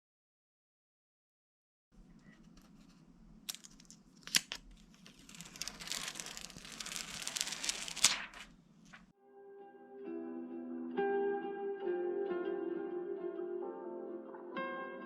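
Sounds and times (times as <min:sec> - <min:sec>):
packaging crinkling and tearing: 0:02.2 - 0:09.1.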